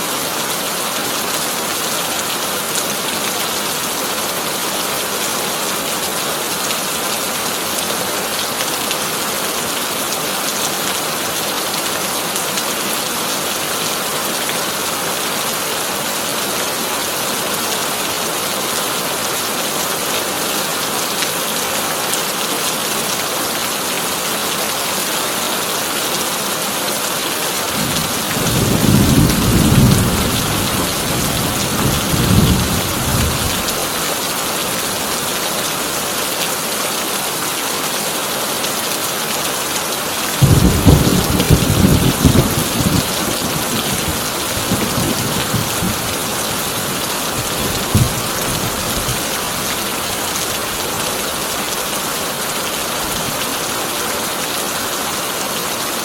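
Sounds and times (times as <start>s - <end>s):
heavy rain on a tin roof: 0.0s - 56.0s
thunder rumbling: 27.8s - 33.8s, 40.4s - 49.8s.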